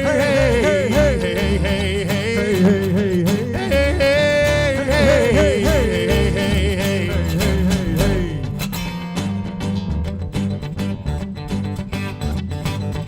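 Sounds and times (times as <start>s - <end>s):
wavering lead line: 0.0s - 8.6s
electric bass: 0.0s - 13.0s
guitar: 0.0s - 13.0s.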